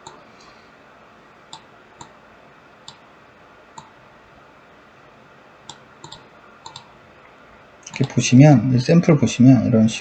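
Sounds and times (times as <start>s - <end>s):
faint room hiss: 0.0s - 10.0s
computer mouse clicking: 1.5s - 2.2s, 2.8s - 3.0s, 3.8s - 4.0s, 5.7s - 7.0s, 7.9s - 8.2s.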